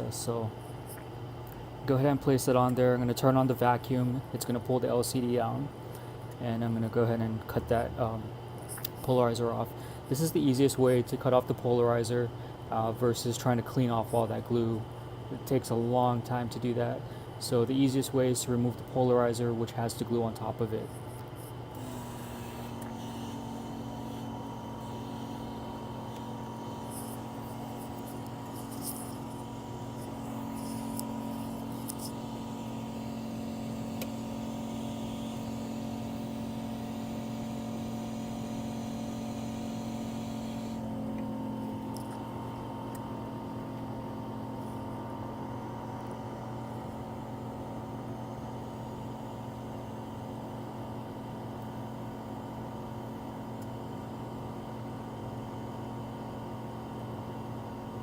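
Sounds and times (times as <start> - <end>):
vacuum pump humming: 20.4 - 58.0
faint ticks and scrapes: 26.8 - 29.4.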